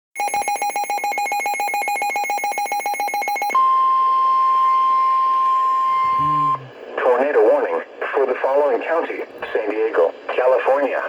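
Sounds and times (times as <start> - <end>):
rapid electronic beeping: 0.2 - 3.6
high warning alarm tone: 0.2 - 6.7.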